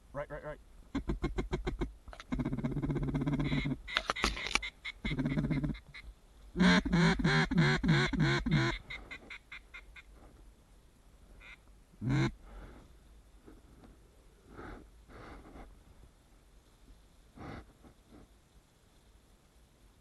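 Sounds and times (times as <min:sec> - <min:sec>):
duck quacking: 0:00.9 - 0:04.0, 0:06.6 - 0:10.1, 0:11.4 - 0:12.4.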